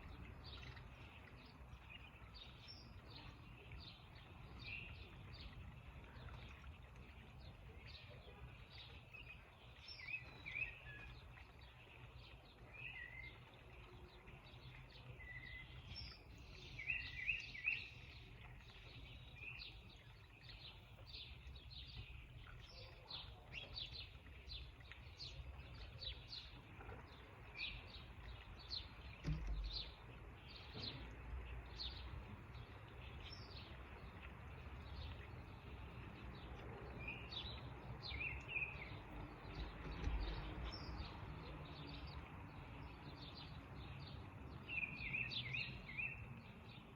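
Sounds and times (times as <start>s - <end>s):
small birds chirping: 0.0s - 46.9s
low thump: 29.2s - 29.9s.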